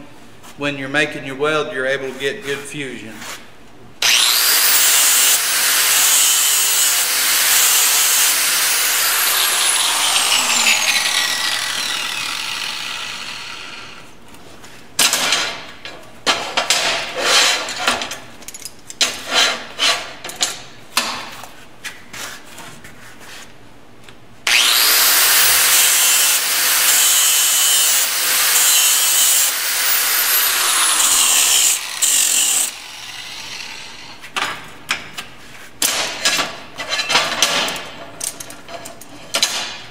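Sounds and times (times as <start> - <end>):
hand grinder grinding steel: 4.0 - 14.1, 24.5 - 34.3.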